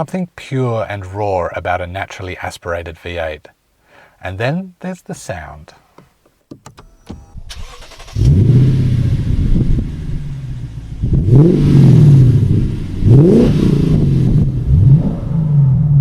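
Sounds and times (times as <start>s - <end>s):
car engine idling: 6.0s - 11.5s
car engine starting: 6.0s - 16.0s
car engine revving: 6.5s - 16.0s.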